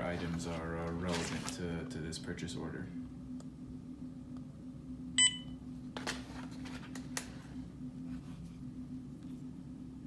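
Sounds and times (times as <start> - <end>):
low steady hum: 0.0 - 10.0
barcode scanner beep: 5.2 - 5.5.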